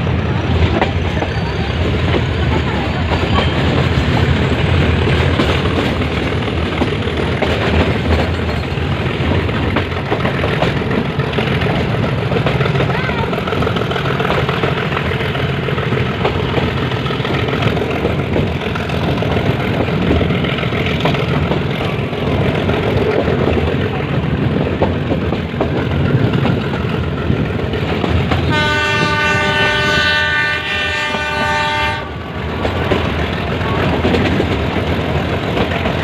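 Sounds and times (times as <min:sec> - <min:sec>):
train rumbling and rattling: 0:00.0 - 0:36.0
locomotive horn blast: 0:28.5 - 0:32.3.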